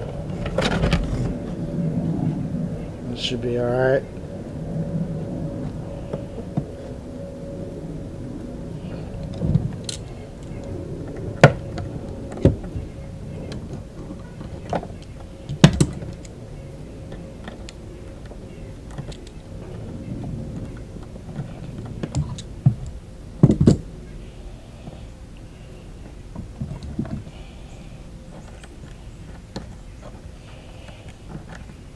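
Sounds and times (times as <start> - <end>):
faint steady hum: 0.0 - 31.9
sharp clicks and knocks: 13.5 - 16.3.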